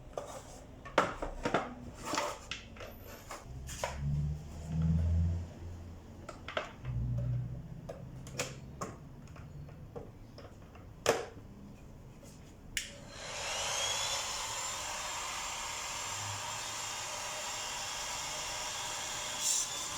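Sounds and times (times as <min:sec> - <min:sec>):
small electric motor whining: 0:13.0 - 0:19.9.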